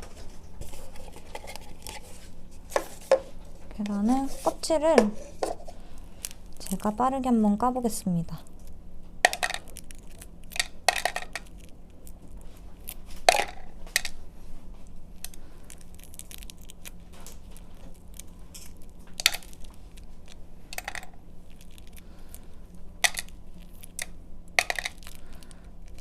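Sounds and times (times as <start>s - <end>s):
egg shell tapping and cracking: 8.6s - 14.2s, 15.2s - 26.0s.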